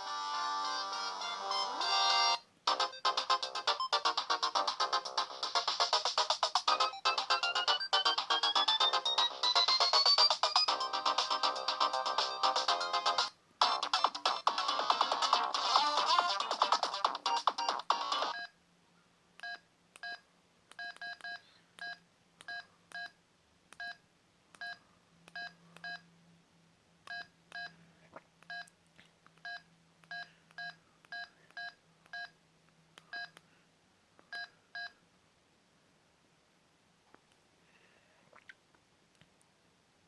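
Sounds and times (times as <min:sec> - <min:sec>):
phone ringtone: 0:06.7 - 0:16.5.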